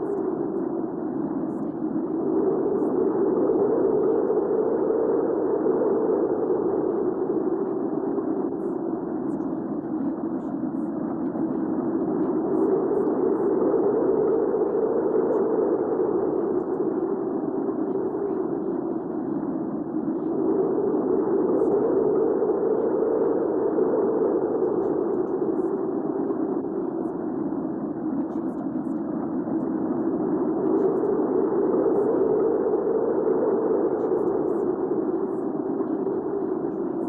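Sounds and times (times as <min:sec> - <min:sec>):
deep rush of wind: 0:00.0 - 0:36.9.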